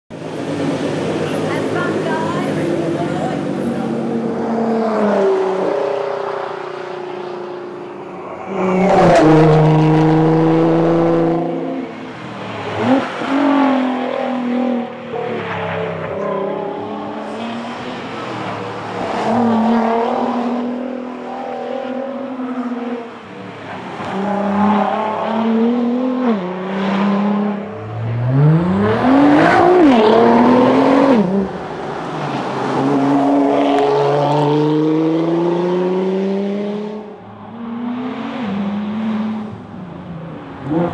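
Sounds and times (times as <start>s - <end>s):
car engine revving hard: 8.5s - 12.0s, 24.4s - 39.6s.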